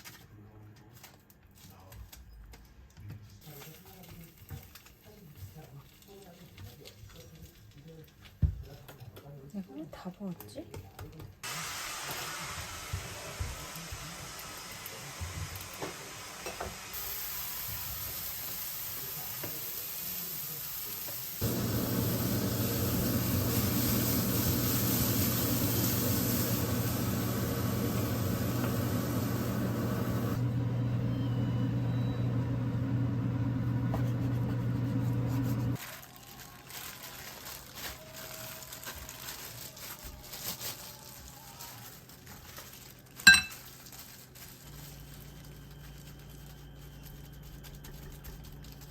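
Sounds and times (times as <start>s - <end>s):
small kitchen noises: 0.0s - 48.9s
frying sizzle: 11.4s - 45.3s.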